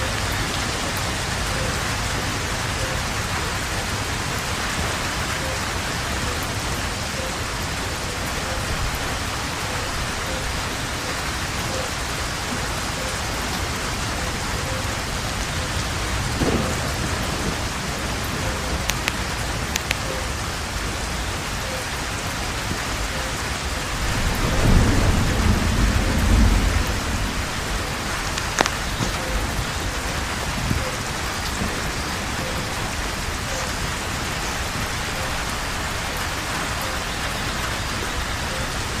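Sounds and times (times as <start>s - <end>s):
heavy rain on foliage: 0.0s - 39.0s
thunder rumble: 0.0s - 39.0s.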